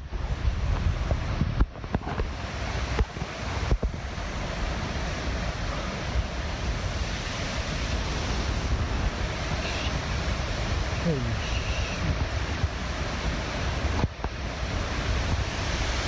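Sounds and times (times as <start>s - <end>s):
strong gusty wind buffeting microphone: 0.0s - 16.0s.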